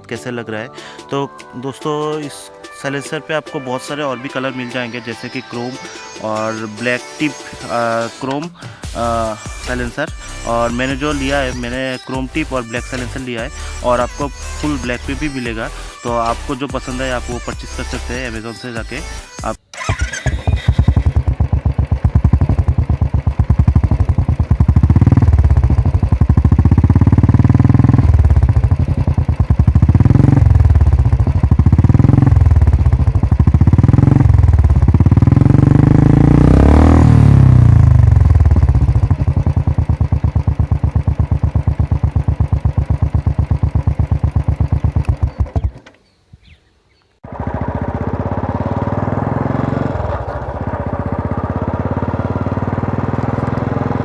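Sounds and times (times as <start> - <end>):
motorcycle engine thumping idle: 19.8 - 46.1, 47.2 - 54.0
motorcycle engine throttle blips: 19.8 - 46.6, 47.2 - 54.0.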